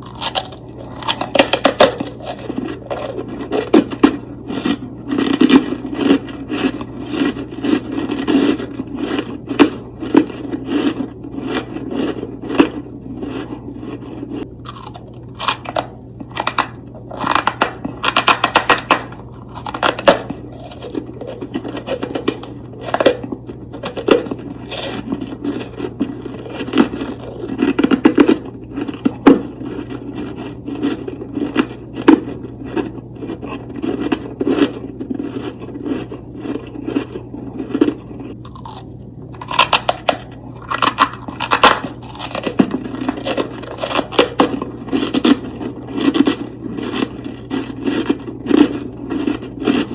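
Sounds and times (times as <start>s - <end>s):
freezer frost crunching and scraping: 0.0s - 49.9s.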